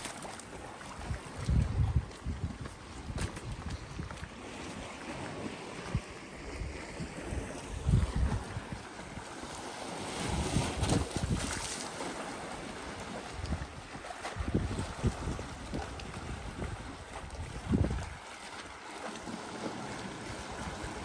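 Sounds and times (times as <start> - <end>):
wind buffeting microphone: 0.0 - 11.8, 12.6 - 18.8
sea washing against shore: 0.0 - 21.0.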